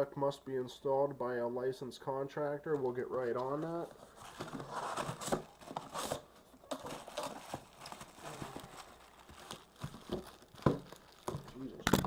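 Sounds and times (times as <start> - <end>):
packaging rustling: 3.4 - 12.0.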